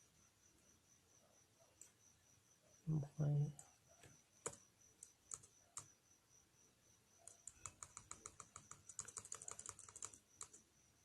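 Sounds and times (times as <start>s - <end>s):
typing on keyboard: 4.4s - 5.9s, 7.2s - 10.6s.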